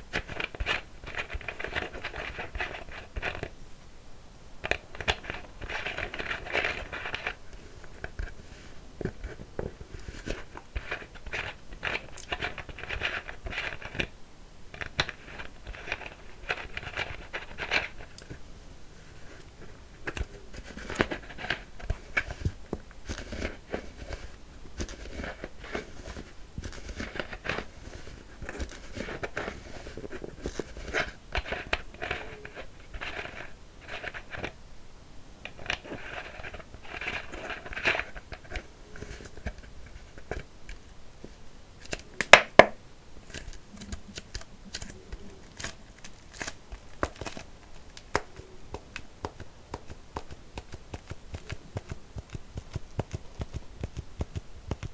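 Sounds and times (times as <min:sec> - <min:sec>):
plastic bottle crinkling: 0:41.9 - 0:54.9.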